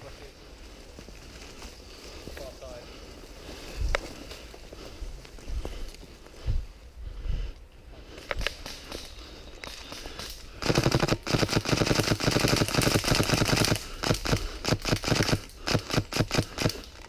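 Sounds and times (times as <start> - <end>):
airsoft rifle firing: 10.6 - 16.8.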